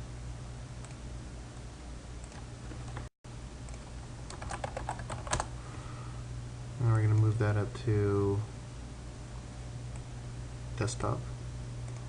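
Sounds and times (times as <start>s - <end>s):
low electrical hum: 0.0s - 12.0s
keyboard keys clicking: 4.3s - 5.5s.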